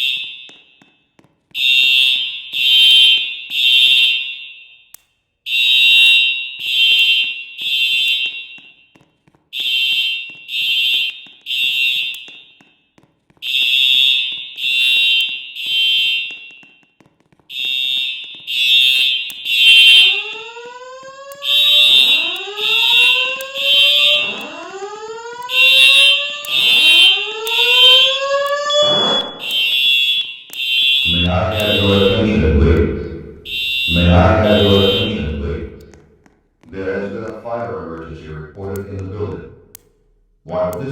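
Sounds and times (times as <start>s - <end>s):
fire alarm beeps: 0.0s - 9.0s, 9.6s - 16.7s, 17.5s - 36.0s
rising whoop tones: 20.0s - 29.5s, 31.1s - 36.0s.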